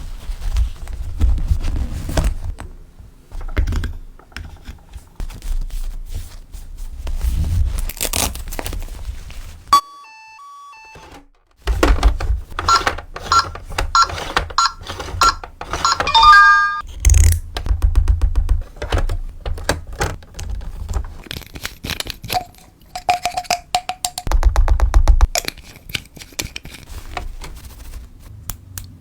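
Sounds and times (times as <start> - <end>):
plastic toy pieces clicking: 19.5 - 24.3.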